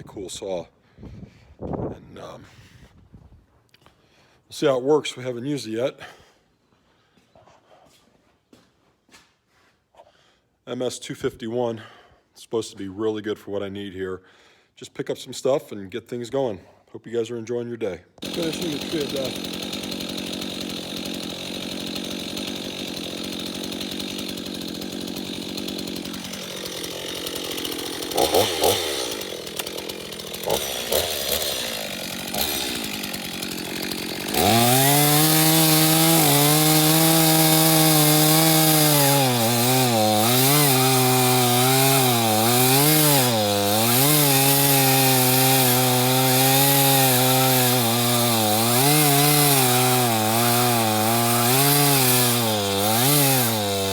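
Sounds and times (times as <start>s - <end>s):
chainsaw cutting wood: 18.2s - 53.9s
chainsaw idling: 18.2s - 53.9s.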